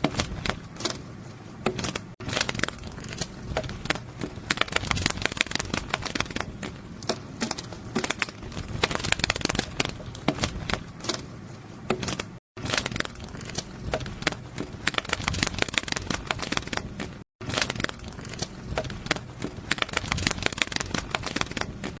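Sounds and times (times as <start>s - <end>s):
butterfly wings flapping: 2.2s - 6.8s.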